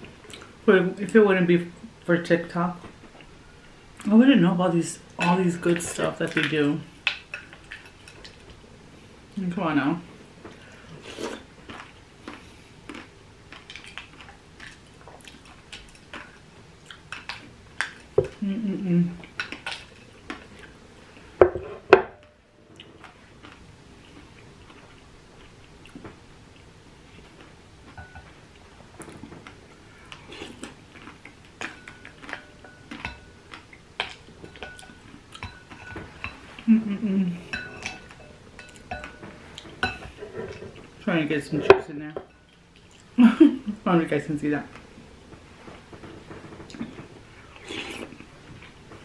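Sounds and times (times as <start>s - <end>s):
chewing crunches: 11.2s - 18.1s, 29.0s - 34.3s.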